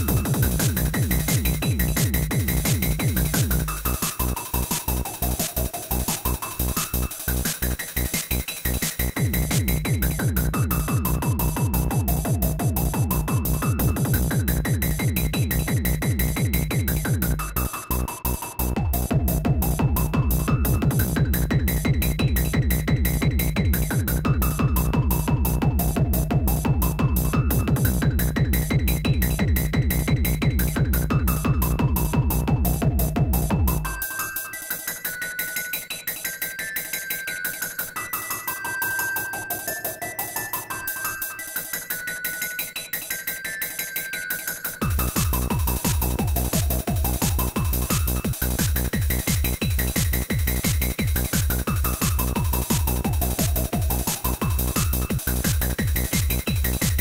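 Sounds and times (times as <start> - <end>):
kick drum: 0.0 - 6.4, 8.2 - 17.7, 18.6 - 34.0, 44.8 - 57.0
sliding bass notes: 0.0 - 8.1, 8.7 - 34.0, 44.8 - 57.0
electronic techno loop: 0.0 - 57.0
hi-hats: 44.5 - 57.0.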